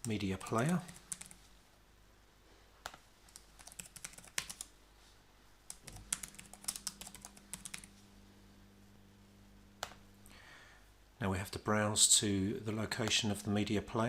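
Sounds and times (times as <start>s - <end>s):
typing on a keyboard: 0.0s - 1.4s, 3.3s - 4.7s, 5.7s - 7.9s.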